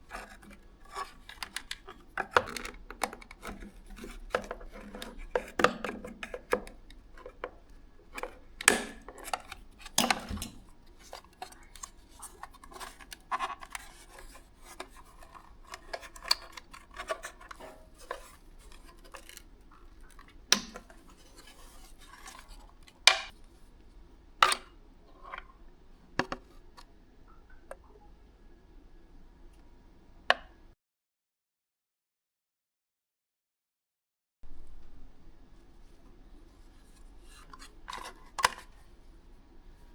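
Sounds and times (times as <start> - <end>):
light scraping and rubbing: 0.0 - 23.8, 35.8 - 39.2.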